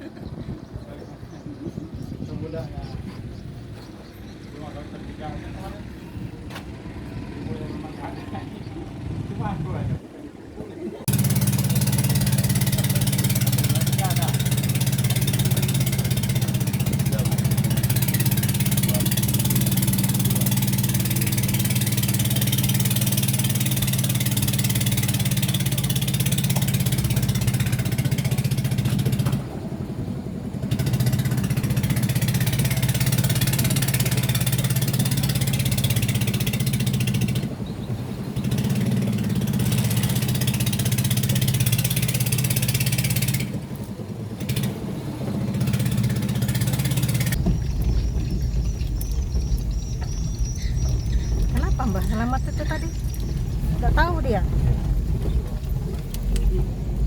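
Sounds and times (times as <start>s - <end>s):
car engine drone: 4.3s - 57.0s.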